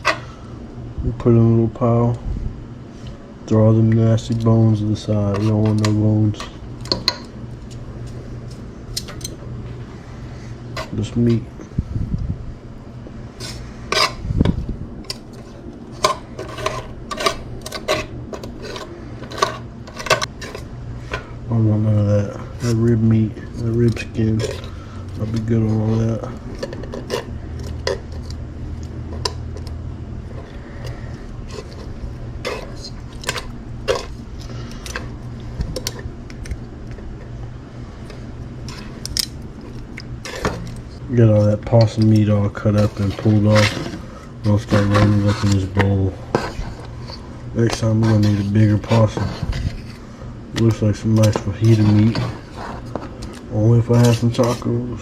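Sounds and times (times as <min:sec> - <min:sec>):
utensils scraping and clinking on dish: 0:05.0 - 0:07.3, 0:13.4 - 0:14.2, 0:15.3 - 0:21.2, 0:23.4 - 0:28.4, 0:30.4 - 0:35.1, 0:40.2 - 0:55.0.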